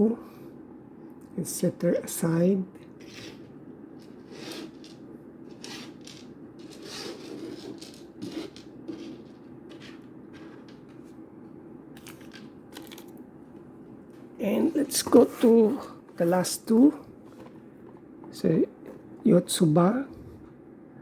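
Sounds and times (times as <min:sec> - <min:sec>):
steady low hum: 0:00.0 - 0:21.0
packaging rustling: 0:04.0 - 0:11.2, 0:12.0 - 0:13.2.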